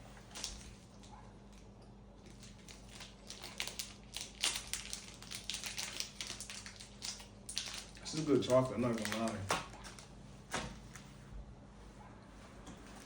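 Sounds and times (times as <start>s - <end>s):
chewing crunchy chocolate: 0.2s - 10.1s.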